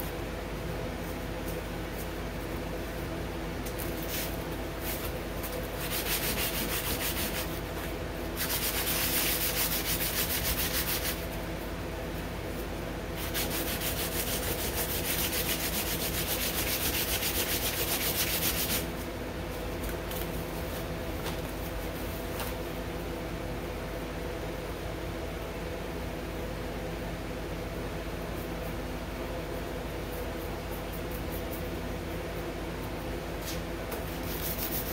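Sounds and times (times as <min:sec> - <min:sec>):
sandpaper scratching on metal: 0:05.8 - 0:07.5, 0:08.4 - 0:11.2, 0:13.2 - 0:18.8, 0:34.2 - 0:34.9.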